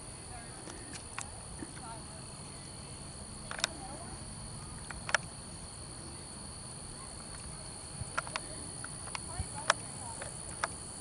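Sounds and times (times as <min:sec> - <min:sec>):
crickets trilling: 0:00.0 - 0:11.0
sharp clicks: 0:03.5 - 0:03.8, 0:04.8 - 0:05.3, 0:07.2 - 0:10.8.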